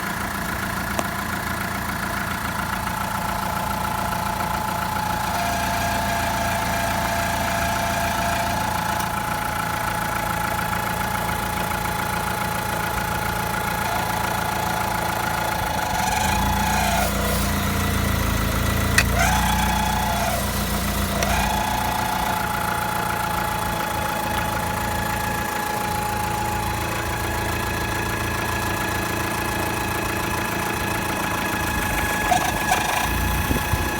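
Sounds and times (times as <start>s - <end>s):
petrol engine running: 0.0s - 33.9s
high-pitched valve whistle: 3.9s - 11.4s.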